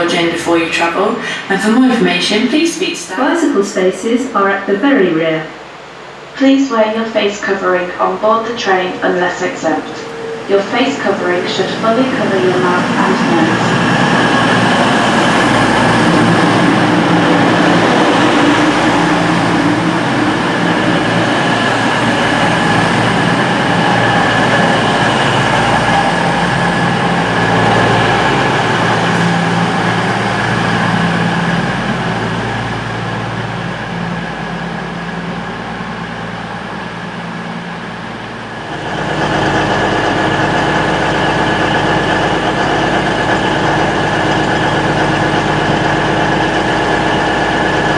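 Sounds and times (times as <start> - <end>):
diesel train passing: 0.0 - 47.9
rail noise: 0.0 - 47.9
diesel engine idling: 11.2 - 33.4, 38.1 - 47.9.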